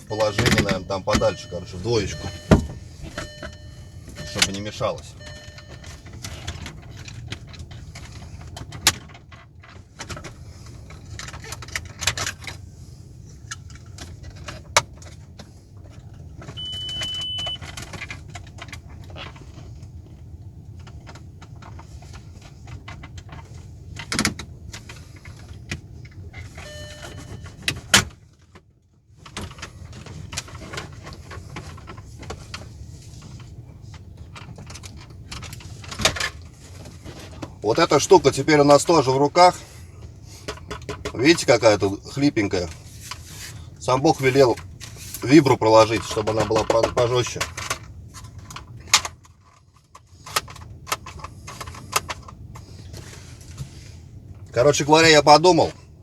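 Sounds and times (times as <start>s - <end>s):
short high beep: 0.0s - 6.0s, 16.6s - 17.6s, 26.6s - 27.6s
steady low hum: 0.0s - 8.6s, 26.3s - 27.7s.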